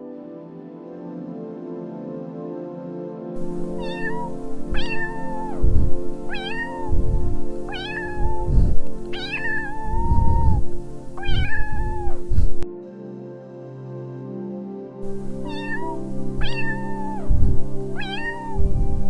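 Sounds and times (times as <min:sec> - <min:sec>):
background music: 0:00.0 - 0:19.0
cat meowing: 0:03.6 - 0:05.7, 0:06.3 - 0:12.3, 0:15.4 - 0:17.4, 0:18.0 - 0:18.8
low thumps: 0:05.6 - 0:06.2, 0:06.9 - 0:07.5, 0:08.2 - 0:09.0, 0:09.9 - 0:12.6, 0:17.3 - 0:17.7.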